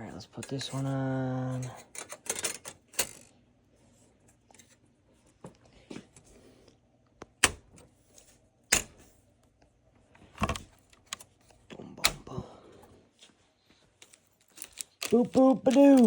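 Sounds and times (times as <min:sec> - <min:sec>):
faint handling sounds: 0:00.2 - 0:07.2, 0:07.8 - 0:16.0
plastic parts clicking into place: 0:14.0 - 0:16.0.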